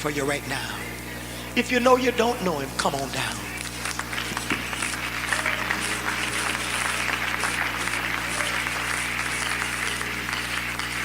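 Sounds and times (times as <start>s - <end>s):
congregation applauding: 3.4s - 11.0s.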